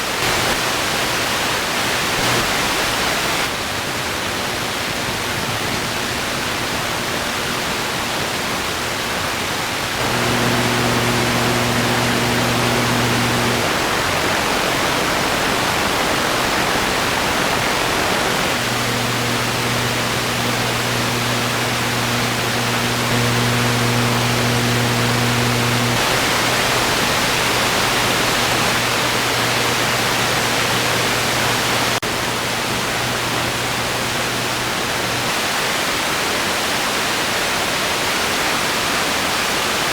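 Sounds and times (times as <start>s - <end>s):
television static hiss: 0.0s - 39.9s
low hum: 10.0s - 13.9s, 17.8s - 35.2s.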